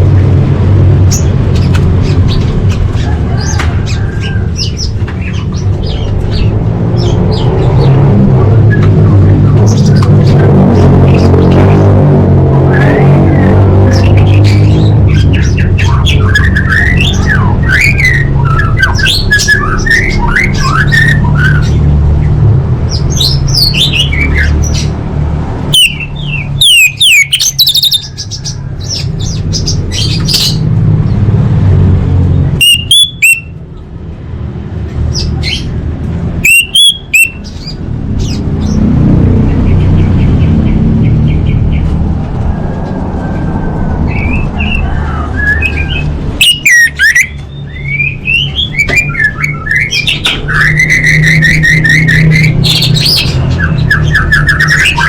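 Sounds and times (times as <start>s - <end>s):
steady low drone: 0.0s - 23.6s
thrush singing whistles and chirps: 12.7s - 21.9s, 25.7s - 30.6s, 32.6s - 33.6s, 36.4s - 38.4s, 44.1s - 55.0s
sharp bird calls: 12.7s - 25.0s, 25.6s - 31.2s, 32.4s - 33.9s, 36.4s - 42.0s, 44.0s - 55.0s.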